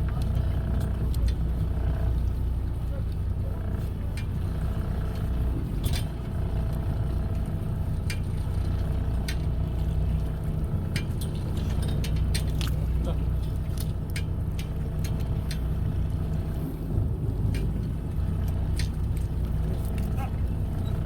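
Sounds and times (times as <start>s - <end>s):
boat engine drone: 0.0s - 21.0s
sharp clicks and knocks: 17.4s - 20.2s.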